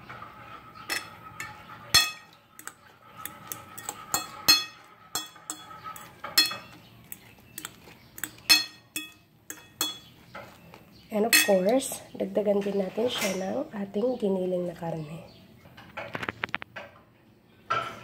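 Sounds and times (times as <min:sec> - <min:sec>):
utensil clinking against a bowl: 0:00.8 - 0:12.0.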